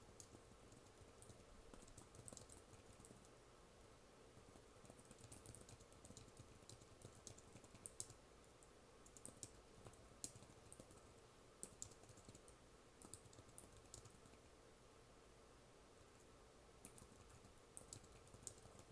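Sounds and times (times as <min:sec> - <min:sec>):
computer keyboard typing: 0:00.1 - 0:03.3, 0:04.4 - 0:08.2, 0:09.0 - 0:14.5, 0:16.8 - 0:18.9.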